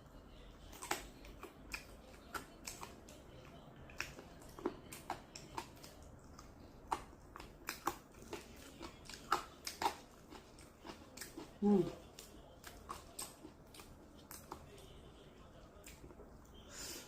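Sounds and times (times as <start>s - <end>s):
person eating wet smacks: 3.9s - 14.7s.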